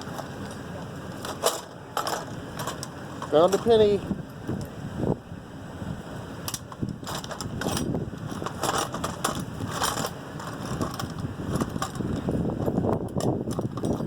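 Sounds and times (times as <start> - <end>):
hard objects clattering and scraping: 7.0 - 12.3.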